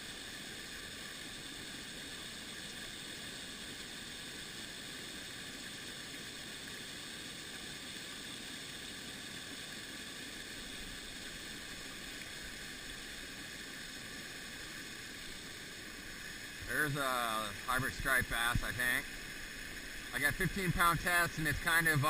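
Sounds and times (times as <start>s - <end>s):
creek water rushing: 0.0s - 22.0s.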